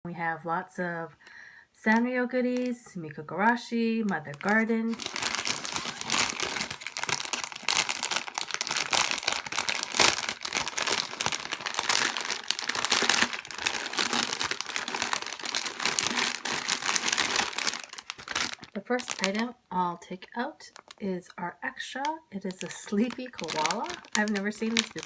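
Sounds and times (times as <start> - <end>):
packaging crinkling and rustling: 4.0 - 19.6, 20.7 - 21.0, 22.4 - 25.0.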